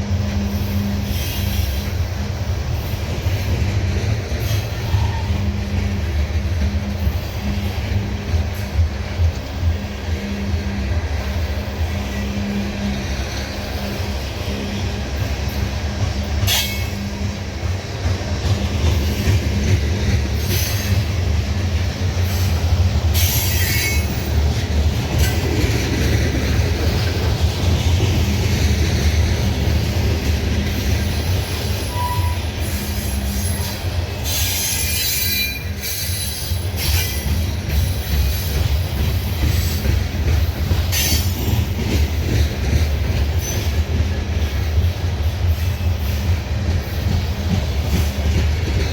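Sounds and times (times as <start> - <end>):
train cars rolling past: 0.0 - 48.9
high-pitched wheel squeals: 23.2 - 24.3, 31.8 - 37.3.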